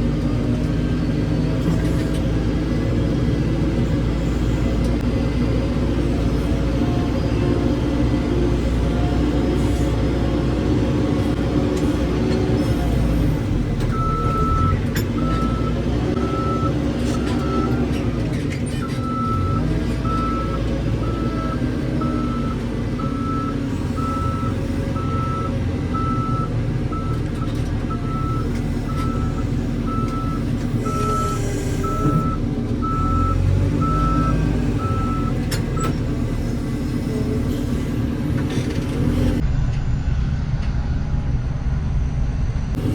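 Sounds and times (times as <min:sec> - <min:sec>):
diesel engine under load: 0:00.0 - 0:41.6, 0:42.2 - 0:42.9
reversing alarm beeping: 0:13.9 - 0:17.8, 0:18.8 - 0:36.4.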